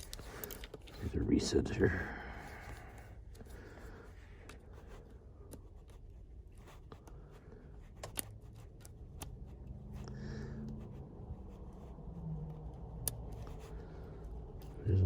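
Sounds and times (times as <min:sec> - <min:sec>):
lock picking clicks and scrapes: 0:00.0 - 0:01.0, 0:08.0 - 0:09.4
faint low rumble: 0:09.2 - 0:15.0.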